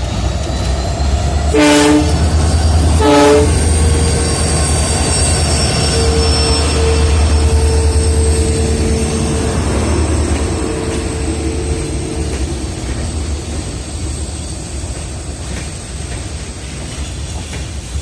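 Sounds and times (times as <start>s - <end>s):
train rumbling: 0.0s - 18.0s
wheel squeal: 2.3s - 15.8s.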